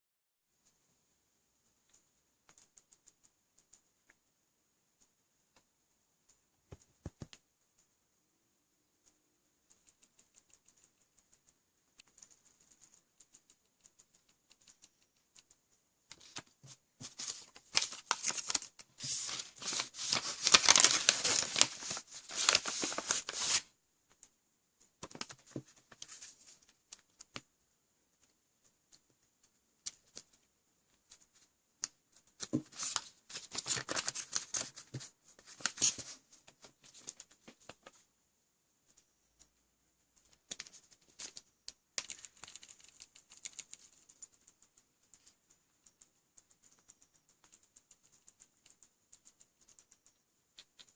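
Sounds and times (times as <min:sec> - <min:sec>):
packaging crinkling and tearing: 0:17.2 - 0:23.6, 0:32.8 - 0:34.7.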